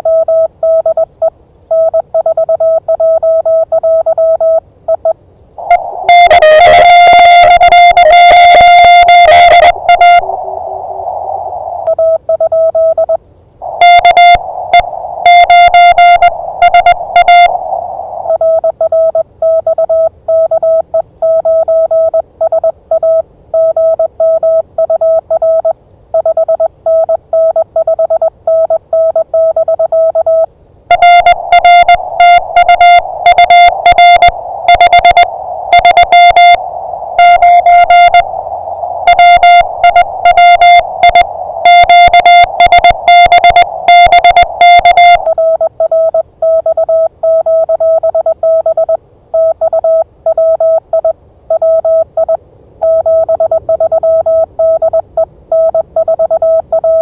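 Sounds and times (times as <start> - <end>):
morse code beeps: 0.0 - 10.7, 11.7 - 57.0
faint receiver hiss: 30.9 - 45.4.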